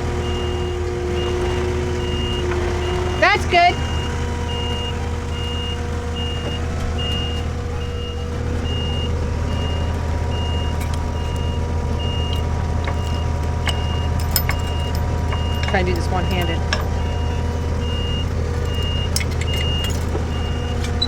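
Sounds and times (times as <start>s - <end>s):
backup alarm beeping: 0.2s - 21.0s
machine engine running: 7.7s - 21.0s.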